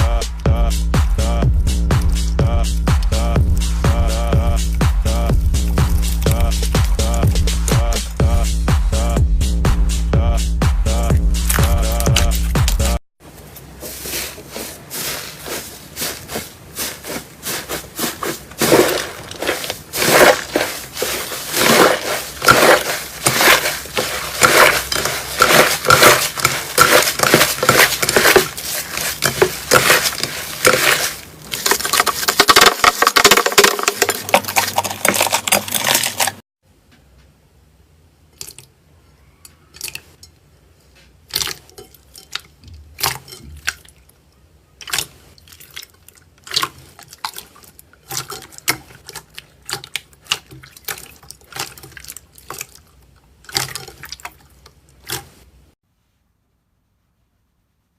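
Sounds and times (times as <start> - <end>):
slime crackling and popping: 18.6 - 36.4.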